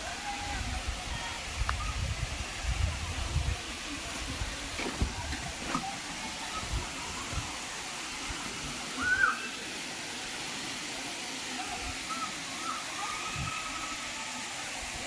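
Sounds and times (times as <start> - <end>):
waterfall rushing: 0.0 - 15.0
faint voice-like calls: 11.4 - 14.7.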